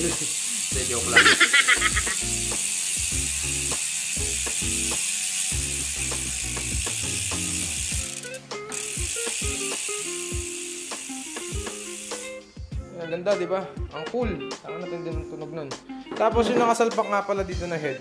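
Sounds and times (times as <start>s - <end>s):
bicycle freehub ratcheting buzz: 0.0s - 12.4s
background music: 0.0s - 18.0s.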